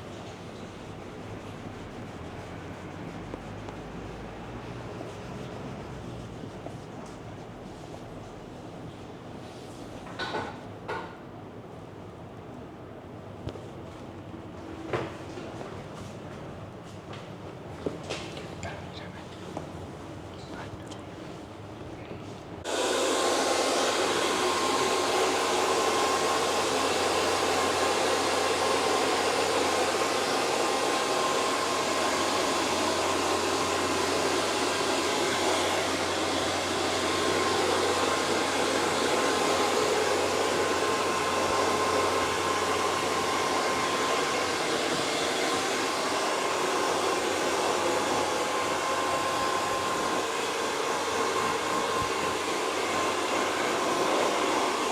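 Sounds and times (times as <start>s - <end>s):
hair dryer running: 22.6s - 54.9s.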